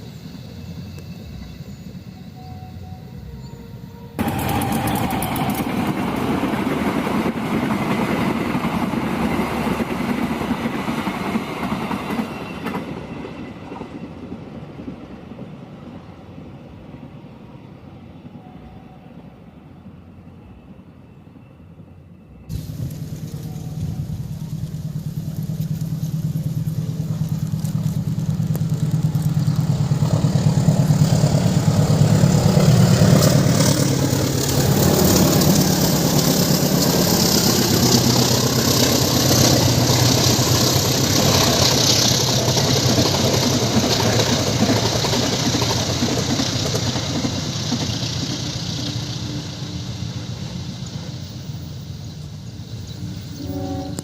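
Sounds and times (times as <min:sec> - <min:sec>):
locomotive engine drone: 0:00.0 - 0:10.1, 0:18.5 - 0:54.0
train wheels clattering on rails: 0:04.2 - 0:15.5, 0:22.5 - 0:51.6.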